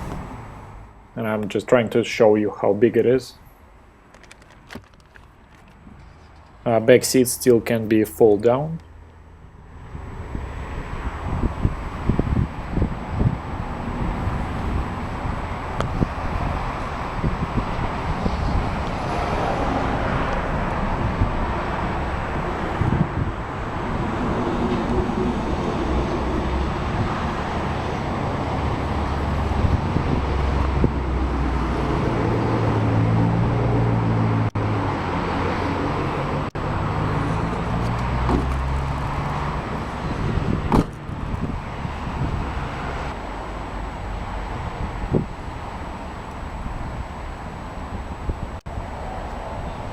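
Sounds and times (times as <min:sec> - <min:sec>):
road traffic noise: 0:00.0 - 0:49.9
vehicle low hum: 0:00.0 - 0:49.9
wind on microphone: 0:09.8 - 0:43.2, 0:44.4 - 0:49.9.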